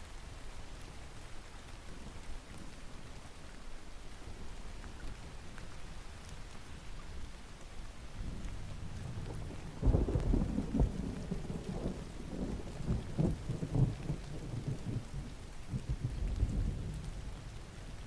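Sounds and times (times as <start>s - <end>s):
steady rain: 0.0s - 18.0s
thunder rumbling: 8.3s - 18.0s.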